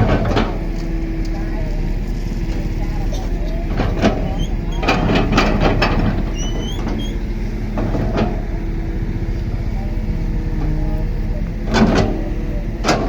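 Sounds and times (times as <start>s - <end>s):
bulldozer diesel engine running: 0.0s - 13.0s
metal clanks: 2.6s - 7.2s
brief squeak: 6.3s - 7.2s.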